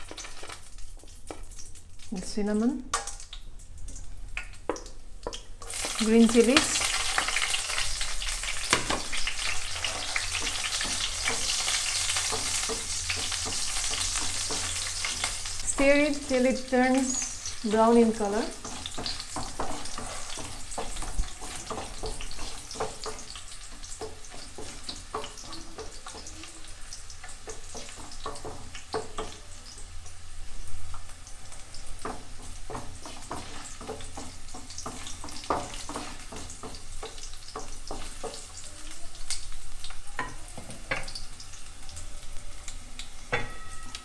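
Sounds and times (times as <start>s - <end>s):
spices sizzling in hot oil: 0.0s - 44.0s
utensil scraping a pan: 6.6s - 26.4s.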